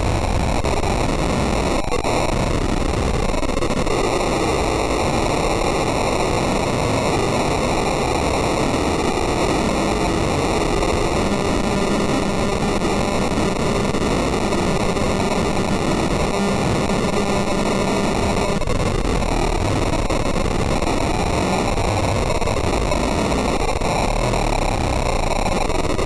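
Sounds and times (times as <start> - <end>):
harsh distorted noise: 0.0 - 26.0.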